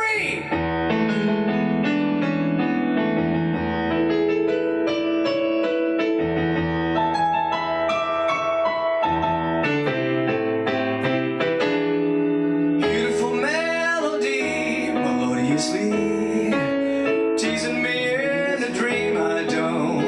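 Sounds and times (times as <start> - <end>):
electric piano melody: 0.0 - 20.0.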